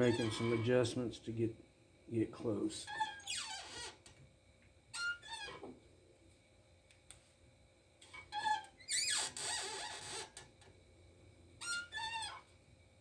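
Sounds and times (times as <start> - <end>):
metal parts squeaking: 0.0 - 0.7, 11.6 - 12.4.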